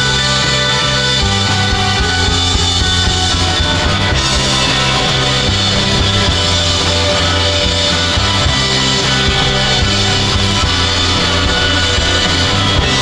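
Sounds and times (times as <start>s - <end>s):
rock music: 0.0s - 13.0s.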